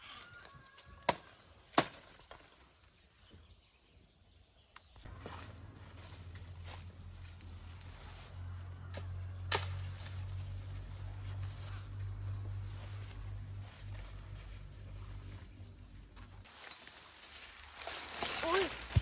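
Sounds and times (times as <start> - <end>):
low hum: 5.1 - 16.5.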